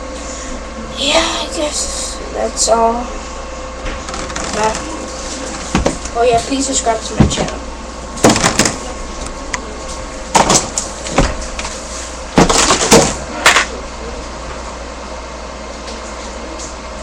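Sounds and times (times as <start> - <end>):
steady background hum: 0.0 - 17.0
loud knocks and rustles: 5.6 - 6.5, 8.2 - 8.8, 12.4 - 13.2.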